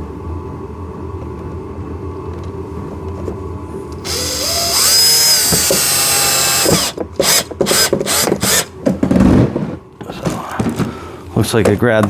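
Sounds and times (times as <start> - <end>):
cordless drill whining: 4.0 - 8.7.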